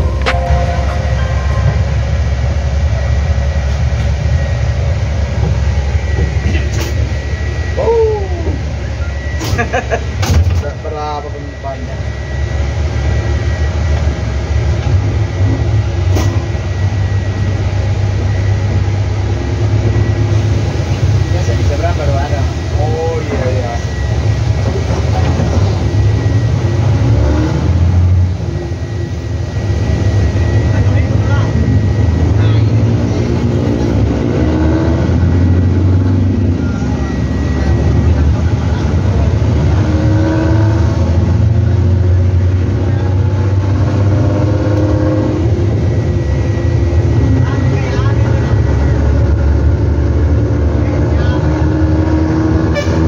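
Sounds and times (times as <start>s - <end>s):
bus diesel engine drone: 0.0s - 53.0s.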